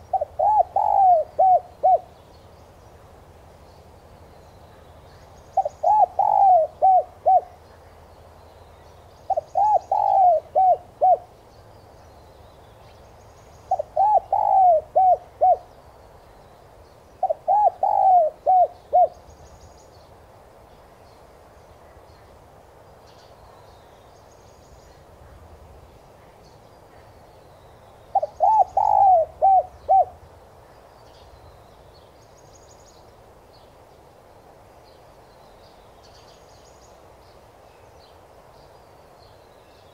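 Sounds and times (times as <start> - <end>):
dove cooing: 0.0 - 2.1, 5.6 - 7.6, 9.3 - 11.3, 13.7 - 15.7, 17.2 - 19.2, 28.1 - 30.2.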